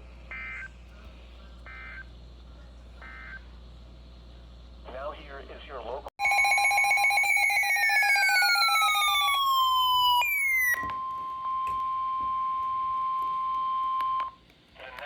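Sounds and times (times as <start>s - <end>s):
falling siren-like tone: 6.2s - 14.3s
steady warning alarm tone: 6.2s - 14.3s.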